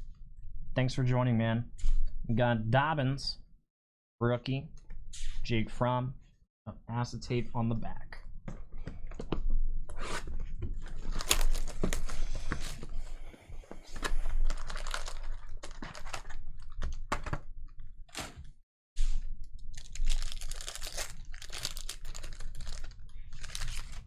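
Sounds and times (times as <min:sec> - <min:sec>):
foil wrappers crinkling: 0:11.0 - 0:12.4, 0:14.0 - 0:16.9, 0:19.6 - 0:24.0.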